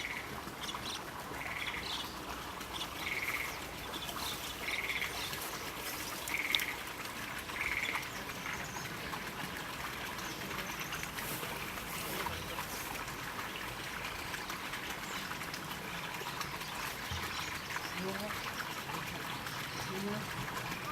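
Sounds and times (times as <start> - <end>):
bird harsh calls: 0.0 - 6.9
running water trickling: 0.0 - 20.9.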